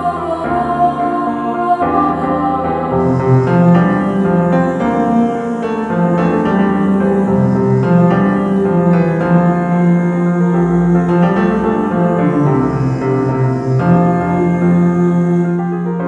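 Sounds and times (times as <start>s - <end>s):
piano chords: 0.0s - 16.0s.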